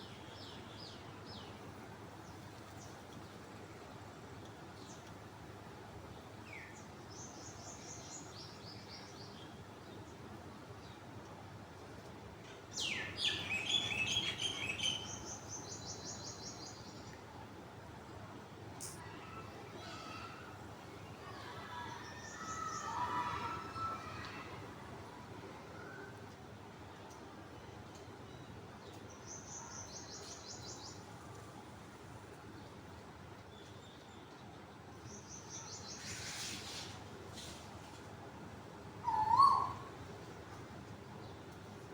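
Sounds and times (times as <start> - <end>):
songbird singing: 12.5 - 17.2, 28.3 - 31.2, 39.0 - 40.5
bird trilling: 39.0 - 39.9
cuckoo cooing: 39.0 - 40.0.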